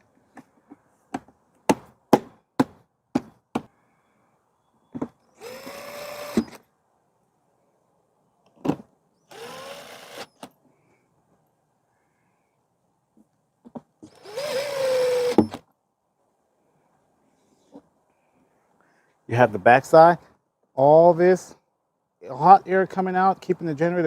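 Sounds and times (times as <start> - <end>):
power screwdriver running: 5.4 - 6.6, 9.3 - 10.5, 14.1 - 15.5.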